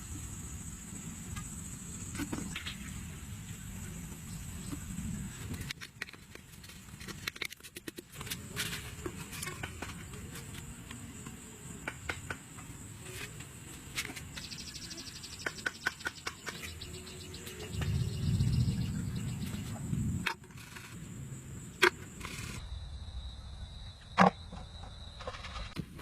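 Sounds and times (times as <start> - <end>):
insect rapid trill: 0.0 - 5.7, 6.6 - 25.8
insect high-pitched whine: 0.0 - 26.0
low rumble: 17.6 - 20.2.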